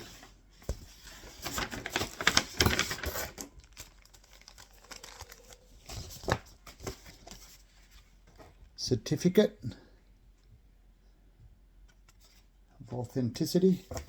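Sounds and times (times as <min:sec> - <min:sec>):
paper crinkling and rustling: 0:00.0 - 0:08.6.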